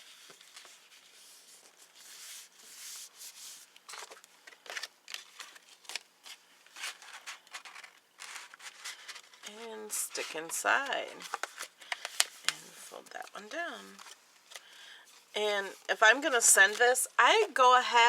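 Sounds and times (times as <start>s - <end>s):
paper rustling and rubbing: 0.0s - 14.2s.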